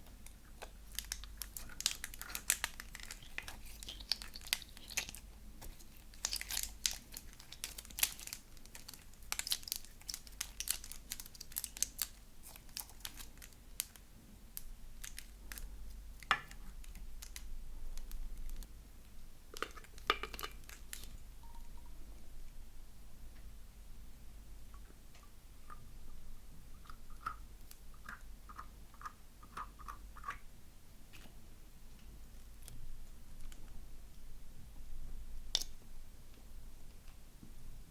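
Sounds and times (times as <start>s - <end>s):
slime crackling and popping: 0.2s - 14.0s, 14.6s - 18.7s, 19.5s - 21.2s.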